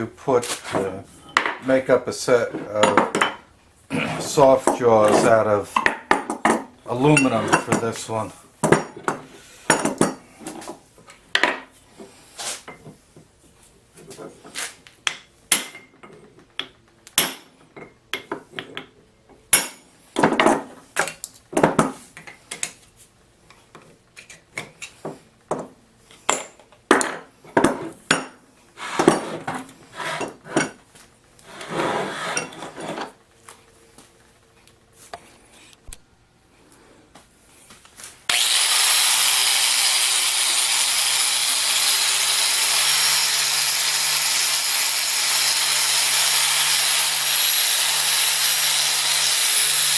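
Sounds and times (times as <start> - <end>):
power machine whining: 38.3 - 49.9.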